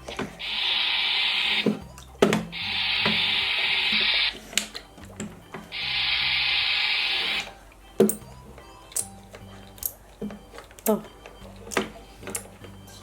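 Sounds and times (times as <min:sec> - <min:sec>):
toy iron spray hissing: 0:00.4 - 0:01.7, 0:02.6 - 0:04.4, 0:05.7 - 0:07.5.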